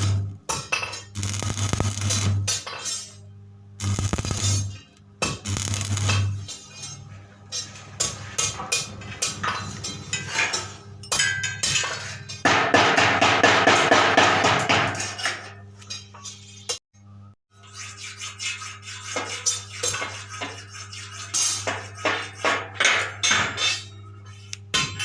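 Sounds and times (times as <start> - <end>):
welding transformer hum: 0.0 - 12.2
welding arc crackling: 1.2 - 2.6, 3.8 - 6.5.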